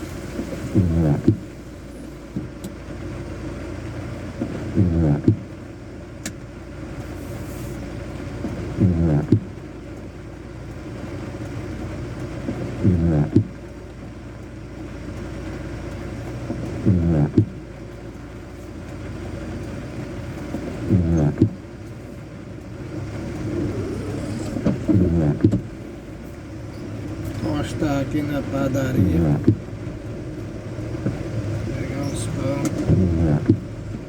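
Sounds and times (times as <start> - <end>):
steady low rumble: 0.0 - 34.0.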